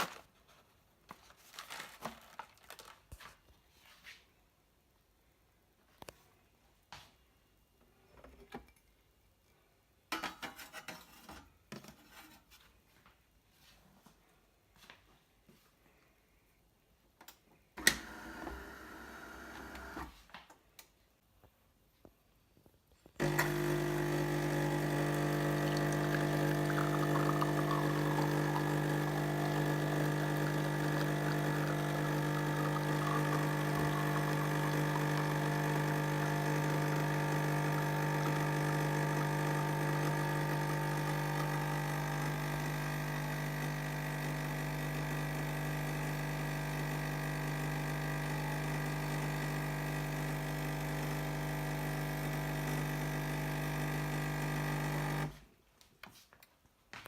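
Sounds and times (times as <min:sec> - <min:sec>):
coffee machine humming: 0:17.8 - 0:20.1, 0:23.2 - 0:55.4
coffee machine clicks: 0:23.2 - 0:42.6.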